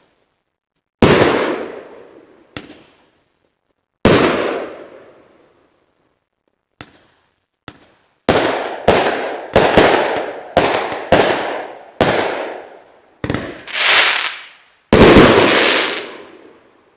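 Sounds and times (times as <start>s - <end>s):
fireworks bangs: 1.0s - 3.2s, 4.0s - 5.4s, 6.5s - 16.7s
small fireworks pops: 2.5s - 4.6s, 6.3s - 12.5s, 13.2s - 16.2s
fireworks hissing: 13.5s - 16.4s.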